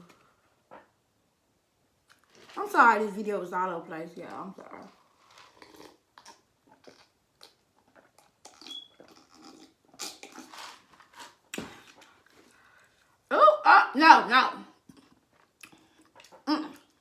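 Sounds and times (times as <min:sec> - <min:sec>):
chewing mouth clicks and smacks: 0:05.3 - 0:13.1, 0:14.9 - 0:17.0.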